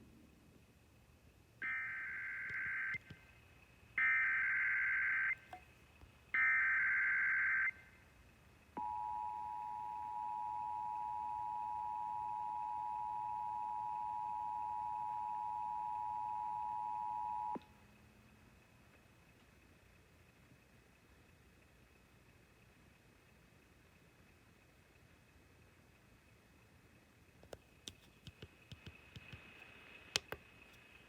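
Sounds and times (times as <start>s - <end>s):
two-tone attention signal: 8.8s - 17.6s.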